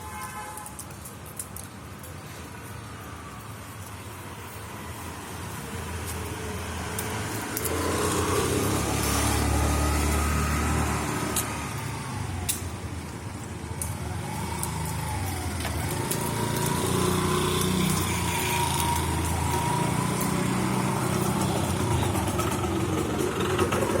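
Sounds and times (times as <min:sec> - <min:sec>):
motor engine rumbling: 0:18.6 - 0:24.0.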